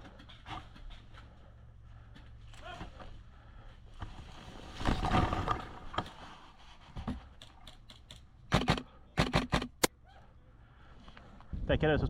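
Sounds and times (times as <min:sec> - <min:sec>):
rustling movement: 0:00.4 - 0:07.6
airsoft gun shots: 0:08.5 - 0:09.9.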